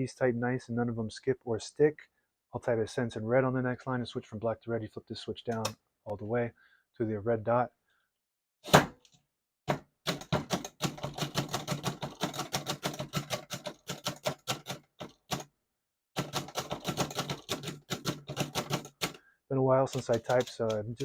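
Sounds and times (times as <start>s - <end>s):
muffled typewriter keystroke clacks: 10.1s - 15.4s, 16.2s - 19.2s, 19.9s - 21.0s.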